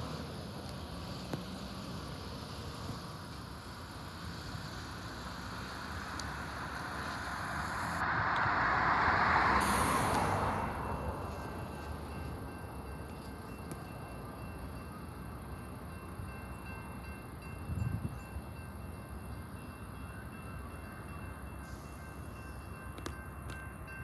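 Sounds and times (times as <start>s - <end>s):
vehicle passing: 3.9s - 12.5s.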